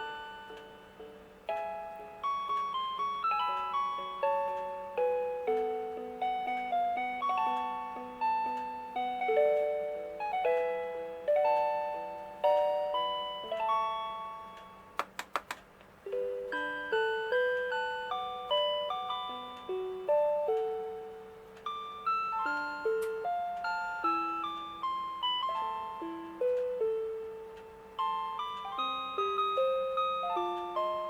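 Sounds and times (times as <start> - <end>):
alarm clock chime melody: 0.0 - 15.0, 16.1 - 31.0
quick clicks: 15.0 - 15.9.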